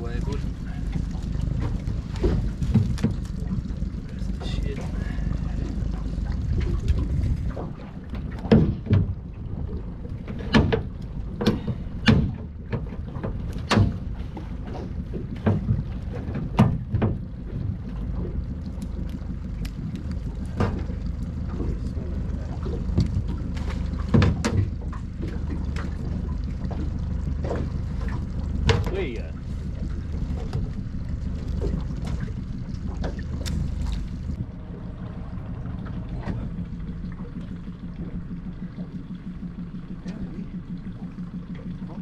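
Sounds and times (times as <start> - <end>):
outboard motor idling: 0.0 - 42.0
sharp knocks and clunks: 8.2 - 9.2, 10.3 - 17.3, 22.9 - 24.9, 27.4 - 29.0.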